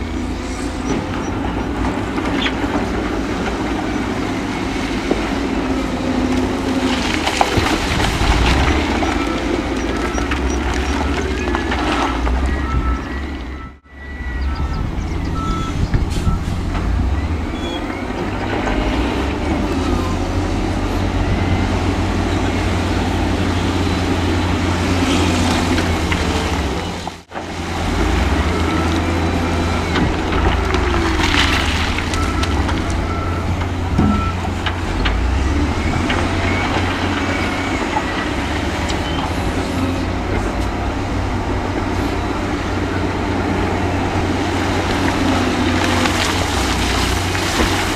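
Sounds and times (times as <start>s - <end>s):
heavy diesel machinery engine drone: 0.0s - 47.9s
reversing alarm beeps: 9.0s - 16.5s, 32.0s - 34.5s.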